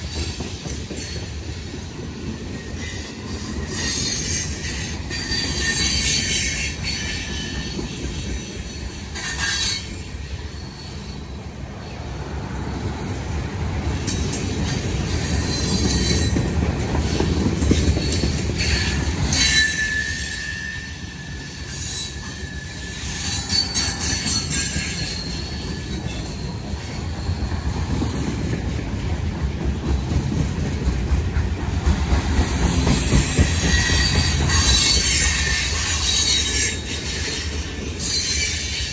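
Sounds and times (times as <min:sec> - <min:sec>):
train wheels rumbling on rails: 0:00.0 - 0:38.9
high-pitched wheel squeals: 0:02.6 - 0:11.5, 0:15.1 - 0:28.0, 0:33.0 - 0:38.9.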